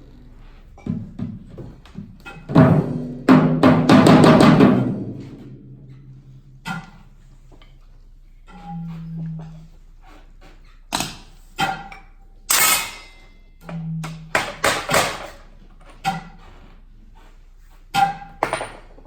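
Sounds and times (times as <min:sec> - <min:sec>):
percussion knocks and ringing hits: 0:02.4 - 0:07.1.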